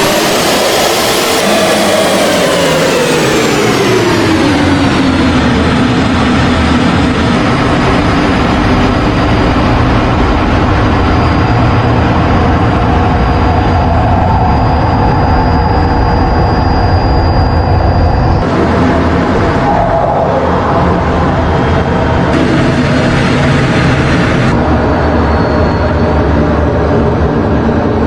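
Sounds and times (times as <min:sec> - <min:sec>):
jet engine rushing: 0:00.0 - 0:28.0
thin high whine: 0:08.9 - 0:26.8.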